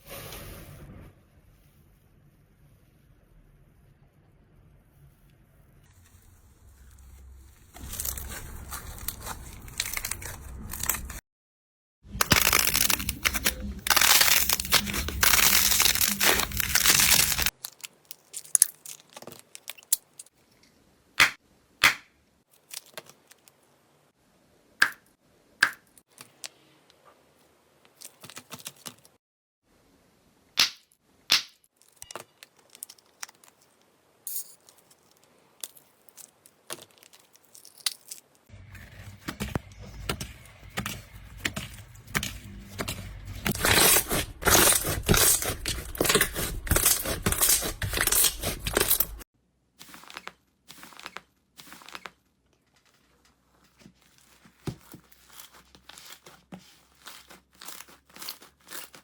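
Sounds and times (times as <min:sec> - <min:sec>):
slime crunching and crackling: 0:05.9 - 0:11.2, 0:12.1 - 0:20.4, 0:34.8 - 0:52.2, 0:53.8 - 0:59.0
sharp pops and clicks: 0:21.2 - 0:22.1, 0:24.8 - 0:26.4, 0:30.6 - 0:32.1.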